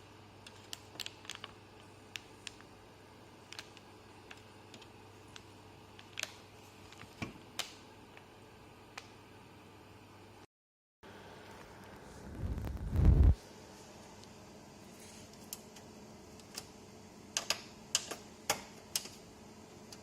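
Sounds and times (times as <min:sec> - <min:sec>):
faint steady hum: 0:00.0 - 0:20.0
hands clicking computer parts: 0:17.4 - 0:19.2.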